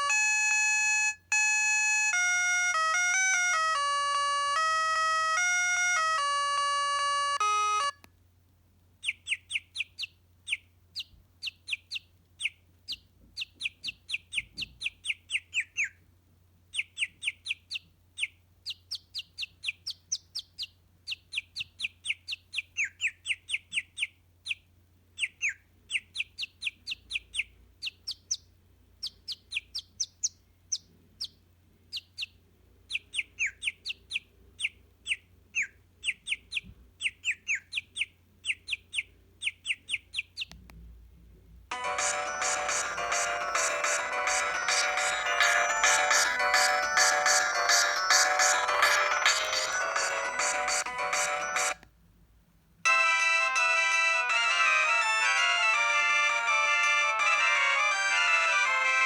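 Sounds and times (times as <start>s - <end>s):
bird-chirp ringtone: 0.0s - 8.0s, 41.7s - 51.8s, 52.9s - 59.0s
chiming phone ringtone: 0.0s - 8.0s, 41.7s - 51.8s, 52.9s - 59.0s.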